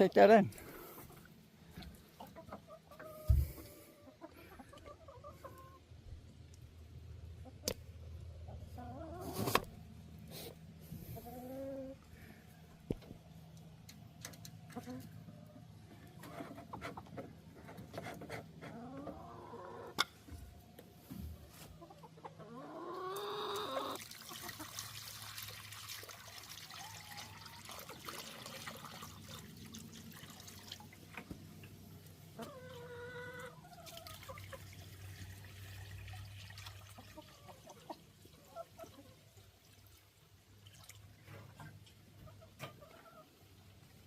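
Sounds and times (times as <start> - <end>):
hens clucking: 0.0 - 6.0, 8.4 - 9.6, 11.1 - 12.1, 14.7 - 20.1, 21.4 - 24.8, 31.2 - 34.8, 36.8 - 39.4, 41.4 - 43.9
water splashing and dripping: 24.0 - 32.1, 33.6 - 42.1.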